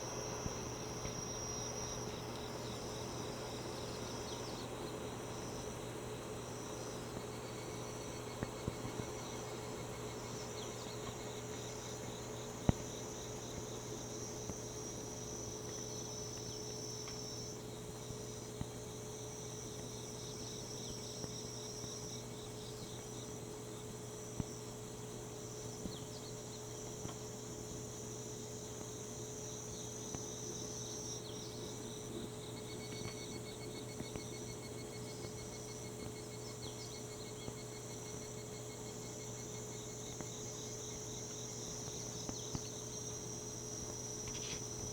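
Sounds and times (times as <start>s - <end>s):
ventilation fan humming: 0.0s - 21.3s
cicadas singing: 0.0s - 44.9s.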